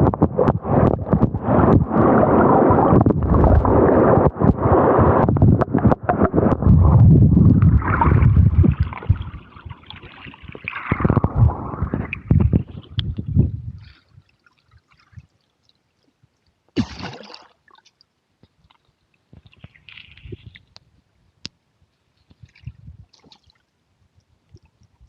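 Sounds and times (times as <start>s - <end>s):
rushing gurgling water: 0.0s - 15.1s.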